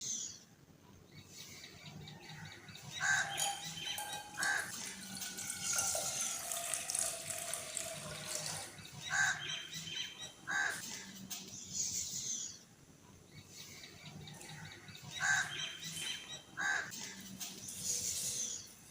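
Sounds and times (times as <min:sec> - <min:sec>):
birds chirping: 0:00.0 - 0:18.9
water pouring: 0:03.0 - 0:09.0.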